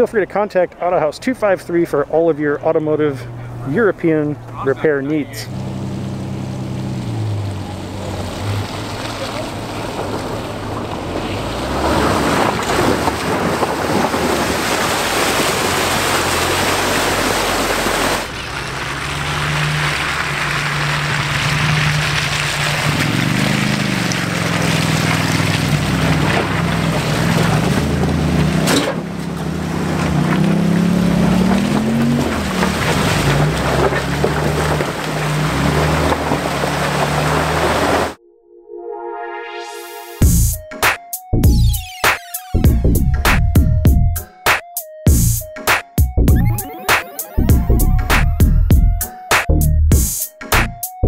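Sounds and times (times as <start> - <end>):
vehicle engine revving: 2.6 - 38.2.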